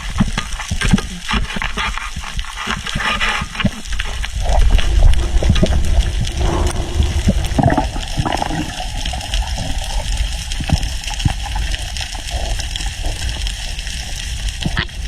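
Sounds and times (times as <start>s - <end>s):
small clicks and splashes: 0.0s - 5.8s, 8.6s - 15.0s
sea water sloshing and gurgling: 0.0s - 15.0s
low rumble: 3.8s - 14.6s.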